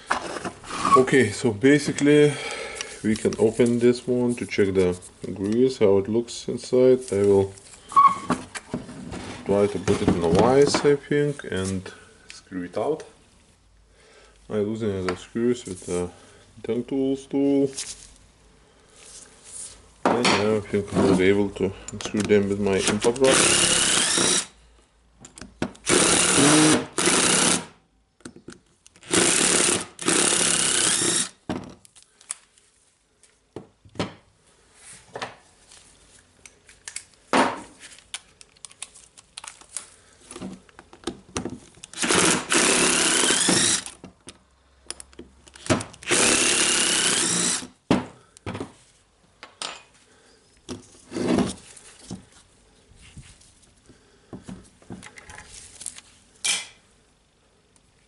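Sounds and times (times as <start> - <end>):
impact driver whirring: 23.2 - 24.5, 25.8 - 27.7, 29.0 - 31.4, 42.0 - 44.0, 46.0 - 47.7
parts clicking and knocking: 25.2 - 25.9, 36.4 - 48.7.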